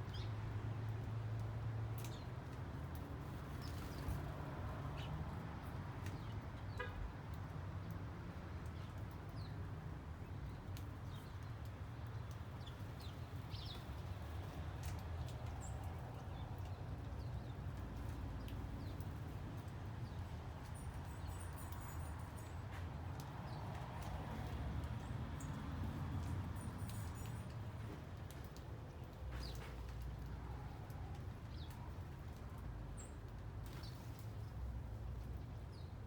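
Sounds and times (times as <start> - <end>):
small birds chirping: 10.2 - 22.5.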